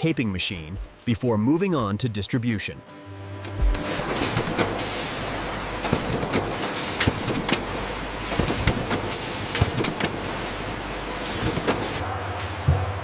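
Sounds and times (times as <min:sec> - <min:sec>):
taping machine running: 0:03.6 - 0:12.6
machine clicks and clacks: 0:04.0 - 0:04.9, 0:05.8 - 0:10.2.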